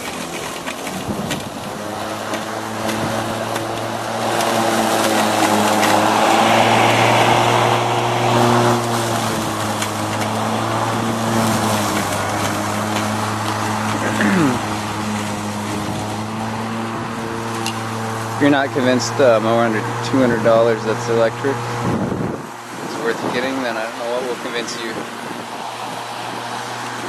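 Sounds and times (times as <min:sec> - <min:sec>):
electric lawn mower motor hum: 0:00.0 - 0:27.0
mower blade cutting grass: 0:00.0 - 0:27.0.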